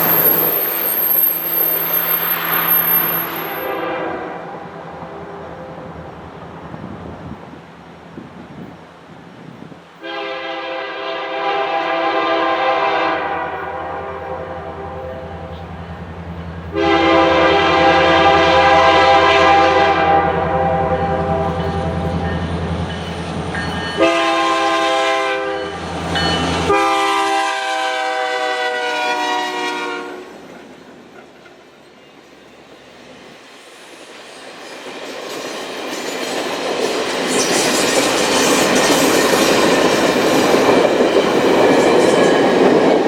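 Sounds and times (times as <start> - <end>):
locomotive air horn blasts: 1.4 - 5.9, 10.0 - 15.7, 16.7 - 22.1, 24.0 - 25.8, 26.6 - 30.4.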